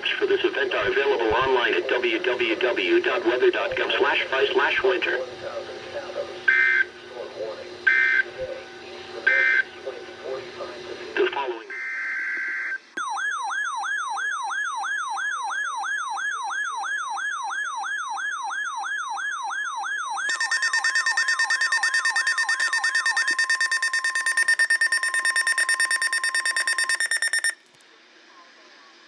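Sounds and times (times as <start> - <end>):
rapidly pulsing tones: 0.5 - 11.6
emergency alert siren tone: 6.5 - 7.0, 7.9 - 10.4, 11.5 - 27.6.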